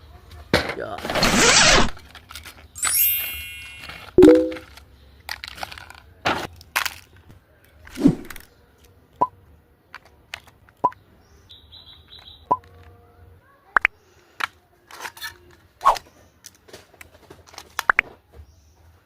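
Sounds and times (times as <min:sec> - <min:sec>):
short high steady tone: 0:02.8 - 0:04.6.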